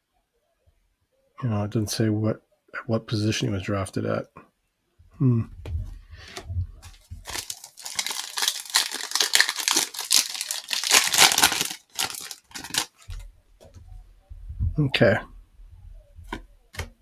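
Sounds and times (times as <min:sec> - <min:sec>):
plastic wrapper tearing and crinkling: 0:06.8 - 0:13.2.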